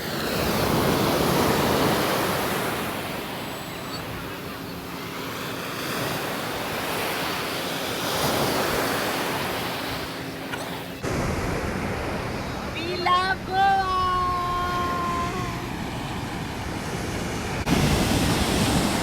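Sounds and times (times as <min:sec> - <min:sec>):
sea surf breaking on beach: 0:00.0 - 0:19.0
wind on microphone: 0:14.2 - 0:19.0.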